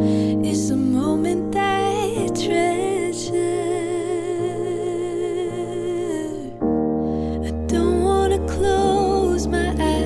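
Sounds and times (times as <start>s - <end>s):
wavering sung melody: 7.4s - 10.0s.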